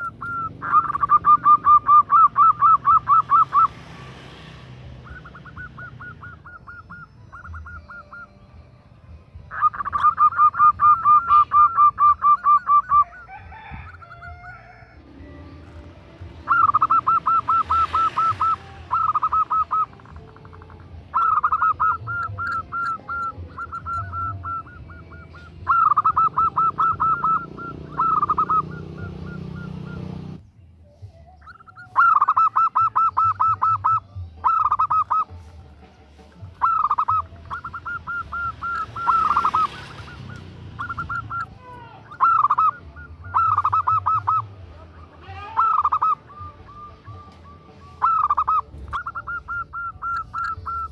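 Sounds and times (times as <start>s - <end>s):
dove cooing: 0.0s - 8.4s, 9.5s - 30.4s, 31.4s - 50.9s.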